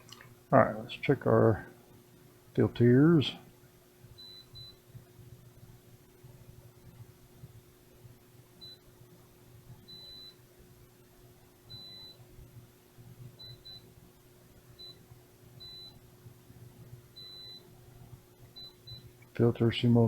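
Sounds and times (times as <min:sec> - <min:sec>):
faint low hum: 0:00.0 - 0:20.0
multimeter beeps: 0:04.2 - 0:04.8, 0:08.6 - 0:08.9, 0:09.9 - 0:10.4, 0:11.7 - 0:12.2, 0:13.4 - 0:13.9, 0:14.8 - 0:15.0, 0:15.6 - 0:16.0, 0:17.2 - 0:17.7, 0:18.6 - 0:19.1.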